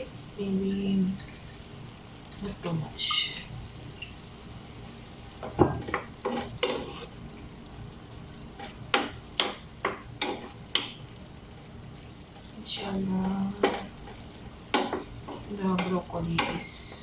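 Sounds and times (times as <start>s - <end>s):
low sizzle of frying: 0.0s - 17.0s
utensil scraping and knocking pan: 5.4s - 7.1s.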